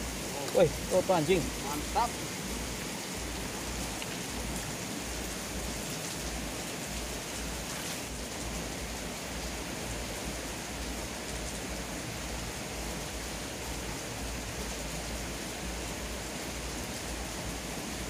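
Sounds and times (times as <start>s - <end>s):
rushing hiss of water: 0.0s - 18.0s.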